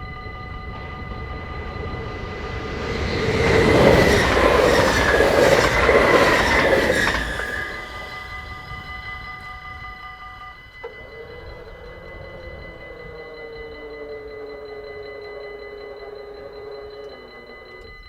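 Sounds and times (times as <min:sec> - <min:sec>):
train wheels on rails: 0:00.0 - 0:09.8
crossing warning bell ringing: 0:00.0 - 0:18.0.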